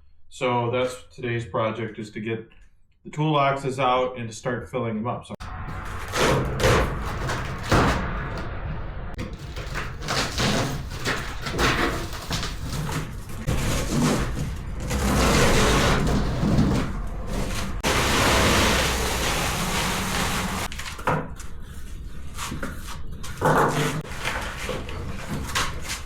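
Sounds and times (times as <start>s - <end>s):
toolbox scraping and sliding: 9.2s - 20.8s, 23.3s - 26.0s.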